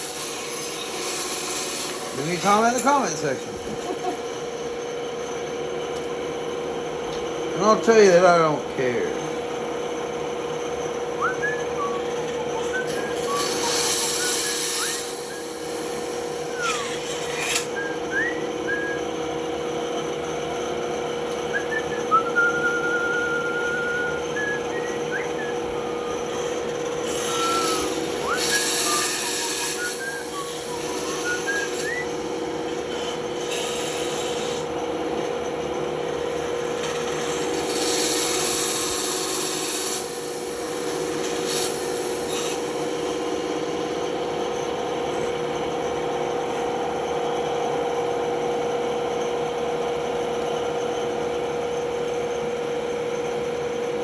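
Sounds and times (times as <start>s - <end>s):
band saw cutting wood: 0.0s - 4.8s, 10.8s - 19.1s, 20.3s - 44.0s
high squeaks: 10.8s - 19.3s, 21.4s - 34.6s.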